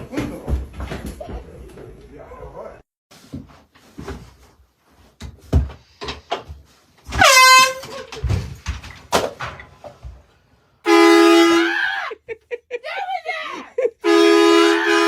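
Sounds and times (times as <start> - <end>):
knocks and thumps: 5.1 - 10.4
air horn blasting: 7.1 - 7.9, 10.9 - 11.8, 14.0 - 15.0.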